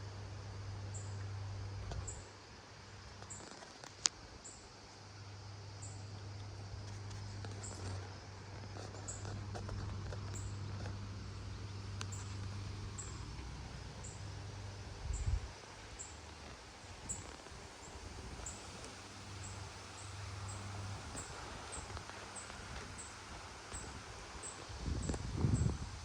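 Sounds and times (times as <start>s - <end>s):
low steady hum: 0.0s - 26.0s
wind buffet on microphone: 14.9s - 15.6s, 23.8s - 26.0s
gusty wind blowing: 23.9s - 26.0s.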